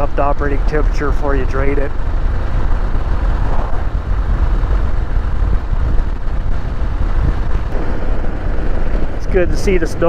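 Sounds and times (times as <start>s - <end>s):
wind rumble on microphone: 0.0s - 10.0s.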